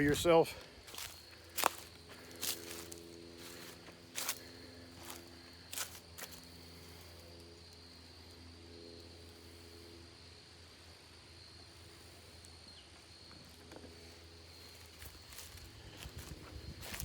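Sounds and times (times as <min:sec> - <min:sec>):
sharp crunches and ticks: 0:00.0 - 0:06.7
distant aircraft engine drone: 0:00.0 - 0:17.0
high insect whine: 0:00.0 - 0:17.0.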